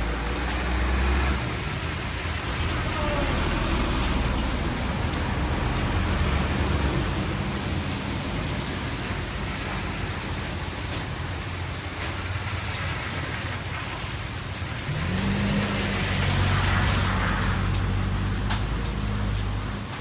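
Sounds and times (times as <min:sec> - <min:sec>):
steady rain: 0:00.0 - 0:20.0.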